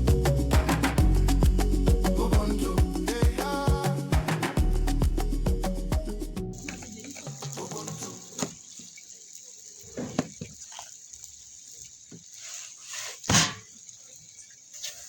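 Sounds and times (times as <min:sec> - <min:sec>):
person singing: 0:00.0 - 0:05.2, 0:07.4 - 0:08.4.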